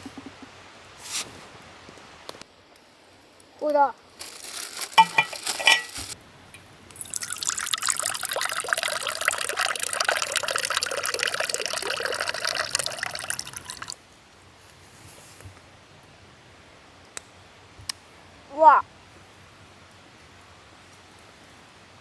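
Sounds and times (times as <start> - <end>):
water pouring and trickling: 4.4 - 6.2, 6.9 - 14.0.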